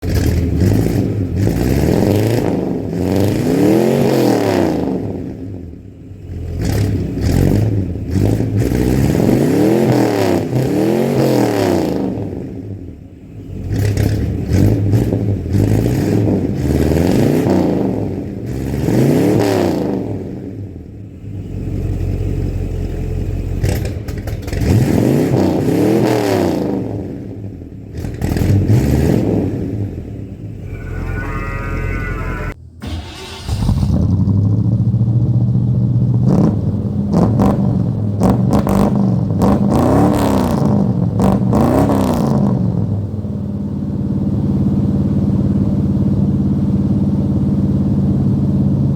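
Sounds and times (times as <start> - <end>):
pickup truck engine revving: 0.0 - 5.4, 6.2 - 12.5, 21.2 - 43.1.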